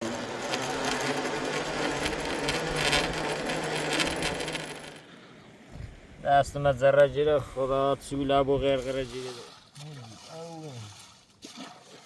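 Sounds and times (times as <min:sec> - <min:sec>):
metallic jingling and clinking: 0:00.4 - 0:05.0.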